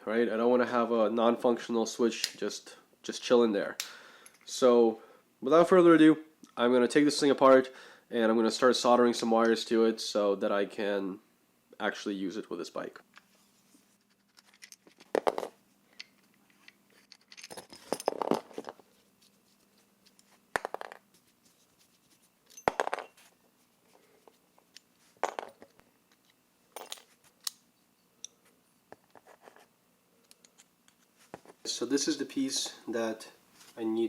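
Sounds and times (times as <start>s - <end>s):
small metal parts clicking: 14.2s - 15.2s, 15.9s - 18.8s.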